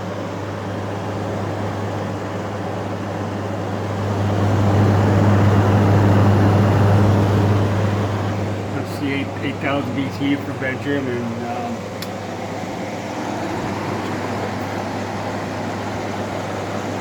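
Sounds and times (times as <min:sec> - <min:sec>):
air conditioner running: 0:00.0 - 0:17.0.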